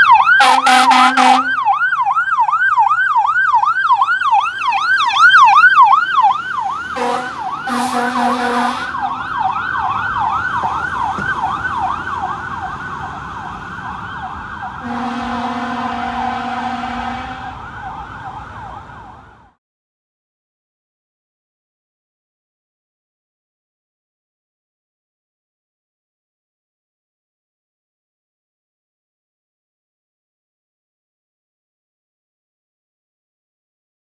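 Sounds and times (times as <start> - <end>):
fire engine siren yelping: 0.0 - 19.6
truck horn blasts: 0.3 - 1.8, 5.8 - 9.2, 14.8 - 17.6.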